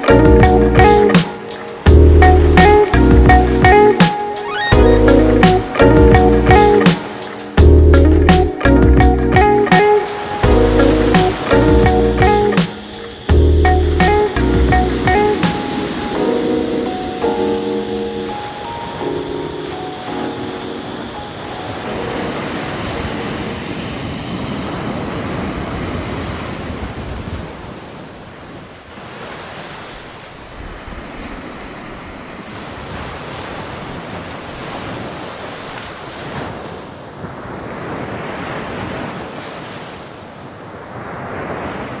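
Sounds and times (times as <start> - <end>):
wind on microphone: 0.0 - 28.7
sea surf breaking on beach: 0.0 - 42.0.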